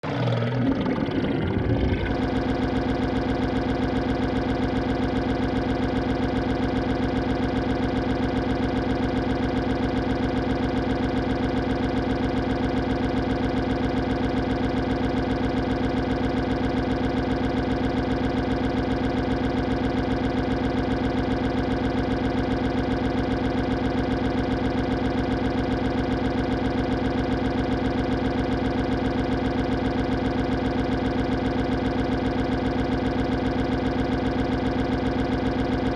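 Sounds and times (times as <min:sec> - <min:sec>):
cartoon stomach growl: 0:00.0 - 0:02.3.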